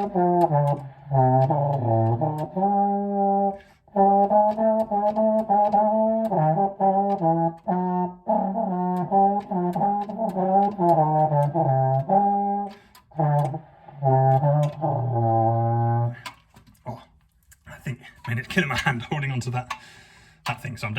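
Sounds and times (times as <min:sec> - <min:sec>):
french horn playing descending notes: 0:00.0 - 0:16.3.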